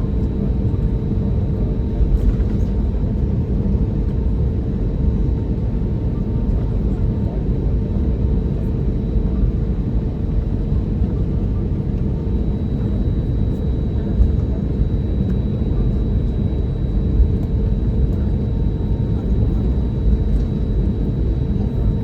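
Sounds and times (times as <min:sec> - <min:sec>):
aircraft cabin low rumble: 0:00.0 - 0:22.0.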